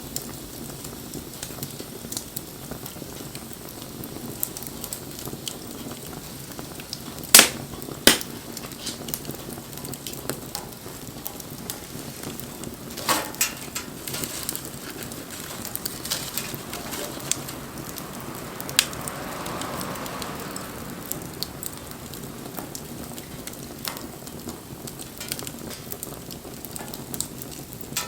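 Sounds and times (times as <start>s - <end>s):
wood fire crackling: 0.0s - 28.0s
loud sharp pops: 7.3s - 9.2s.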